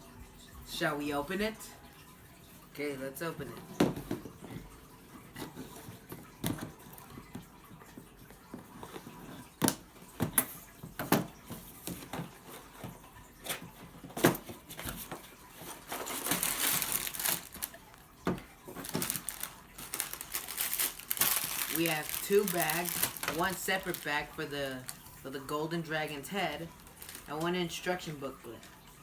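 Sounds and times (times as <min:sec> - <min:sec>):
cardboard rustling and tearing: 0:13.5 - 0:17.8, 0:18.7 - 0:25.2, 0:26.6 - 0:27.5.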